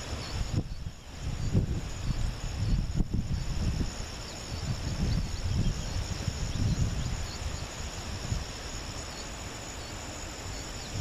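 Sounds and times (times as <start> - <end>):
high-pitched insect chorus: 0.0 - 11.0.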